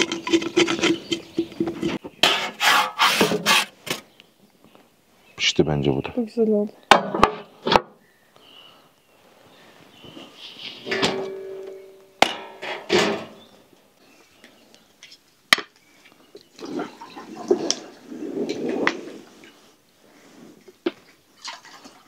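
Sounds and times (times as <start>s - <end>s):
metal cookware knocking and clinking: 10.9s - 13.3s.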